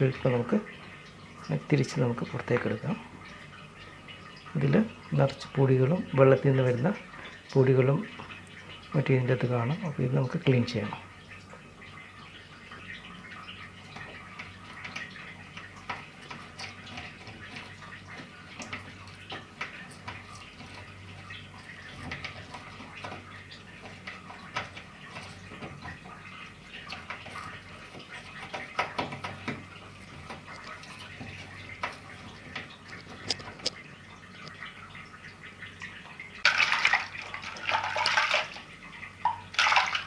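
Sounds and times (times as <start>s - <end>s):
water splashing and dripping: 0.0s - 40.0s
small clicks and taps: 13.9s - 33.8s.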